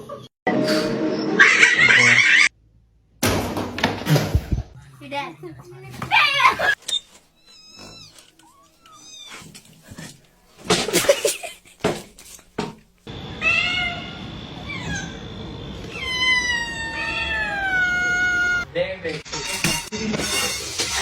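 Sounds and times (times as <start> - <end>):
cats meowing: 7.4 - 9.8, 13.3 - 18.7.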